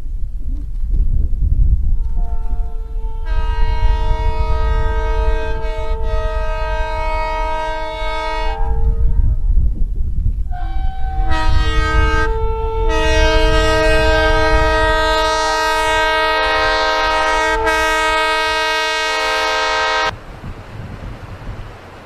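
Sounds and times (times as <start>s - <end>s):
train rumble: 0.0s - 22.0s
locomotive air horn: 2.0s - 9.4s, 10.5s - 20.2s.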